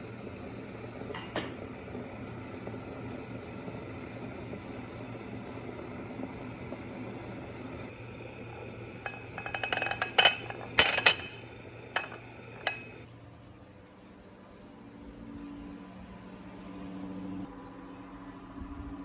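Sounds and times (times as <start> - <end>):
steady low hum: 0.0 - 19.0
glass dishware clinking: 9.0 - 13.0.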